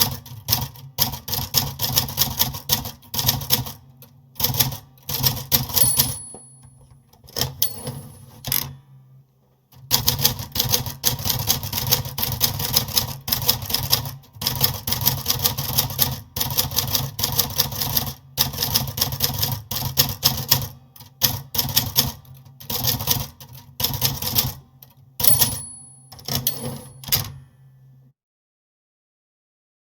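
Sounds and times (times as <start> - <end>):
typewriter bell ring: 5.6 - 8.7, 25.2 - 27.8
typewriter key strikes: 5.6 - 8.7, 25.2 - 27.4.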